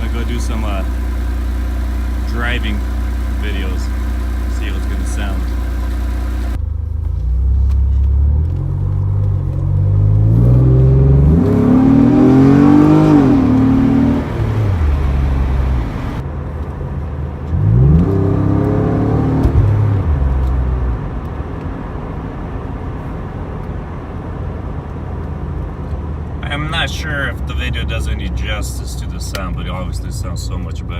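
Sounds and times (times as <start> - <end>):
car engine accelerating hard: 0.0 - 16.2, 17.4 - 22.8.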